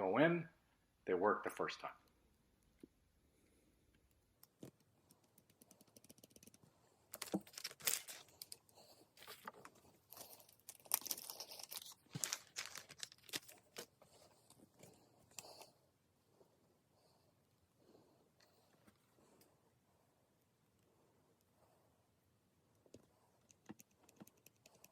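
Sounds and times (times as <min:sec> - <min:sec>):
crinkly rustling of wires: 0:07.1 - 0:15.6.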